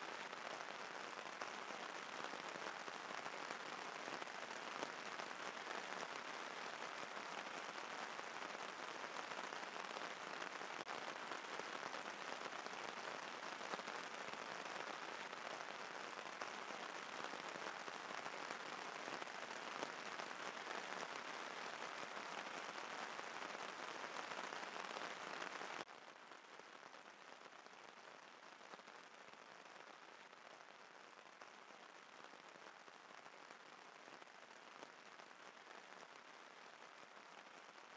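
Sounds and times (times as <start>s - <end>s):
steady rain: 0.0s - 37.9s.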